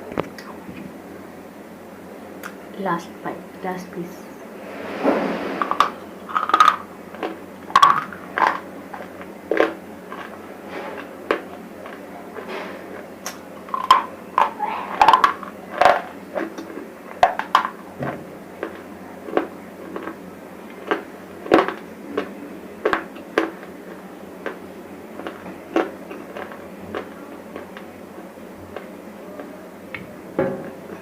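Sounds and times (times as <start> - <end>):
chips crunching: 5.7 - 17.8, 18.6 - 24.6, 25.2 - 27.9.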